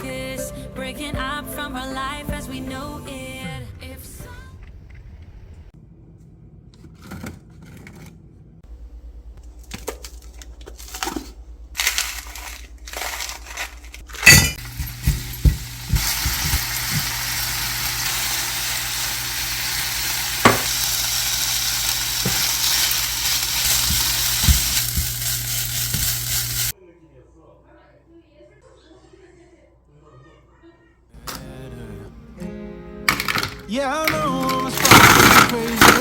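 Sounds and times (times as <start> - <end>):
dishes and utensils clattering: 10.8 - 18.4, 20.4 - 20.9, 33.1 - 36.0
steady sizzling: 11.8 - 26.8, 33.1 - 36.0.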